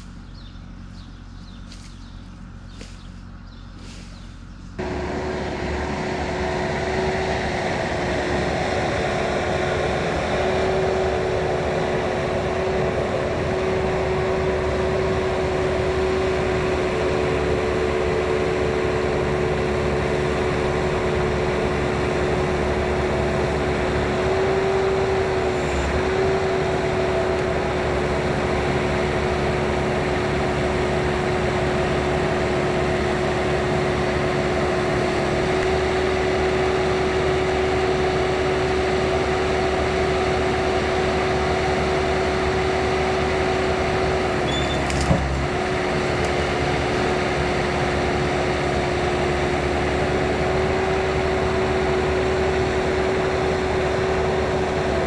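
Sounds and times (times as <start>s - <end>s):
skid steer engine drone: 0.0s - 55.0s.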